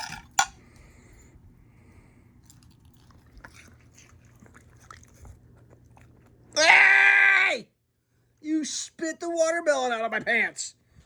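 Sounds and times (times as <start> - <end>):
faint chewing of watermelon: 0.0 - 6.6.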